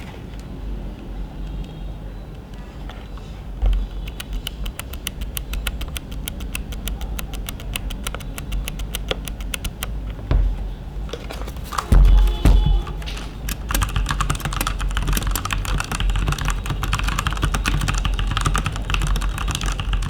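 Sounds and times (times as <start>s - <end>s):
mechanical keyboard typing: 3.7s - 10.2s, 11.1s - 20.0s
dull thump: 10.2s - 13.4s.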